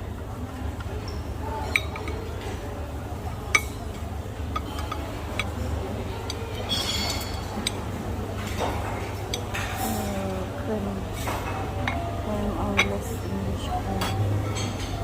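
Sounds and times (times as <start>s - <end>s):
low hum of dining room: 0.0s - 15.0s
dishes and glassware clinking: 1.1s - 2.6s, 3.4s - 10.3s, 11.1s - 13.2s, 13.9s - 15.0s.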